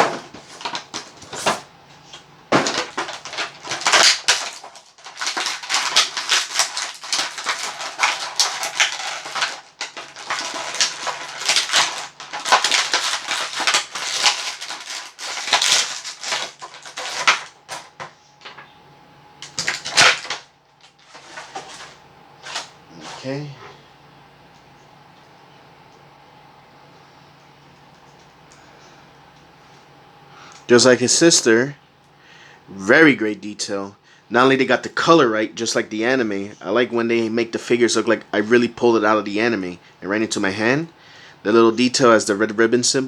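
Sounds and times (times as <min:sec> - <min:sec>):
plastic and cardboard crinkling: 0:00.0 - 0:18.7, 0:19.4 - 0:23.4.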